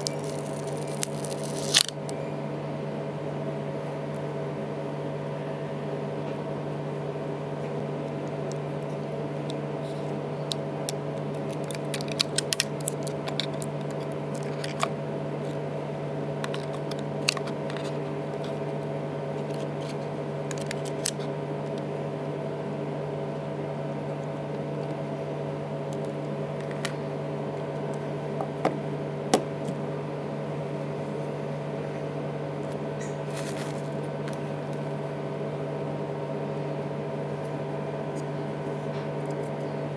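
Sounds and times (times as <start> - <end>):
electrical hum: 0.0 - 39.9.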